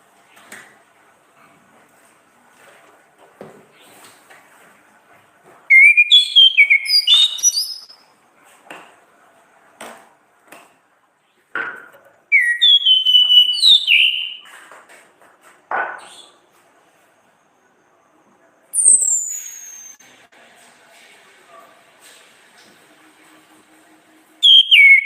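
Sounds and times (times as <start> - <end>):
bird singing whistled phrases: 5.7 - 8.0, 12.3 - 14.4, 18.7 - 20.0, 24.4 - 25.0.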